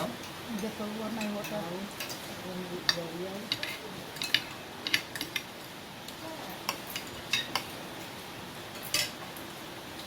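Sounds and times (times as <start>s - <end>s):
spoons clinking on plates: 0.0s - 5.6s, 6.6s - 8.1s, 8.8s - 9.3s.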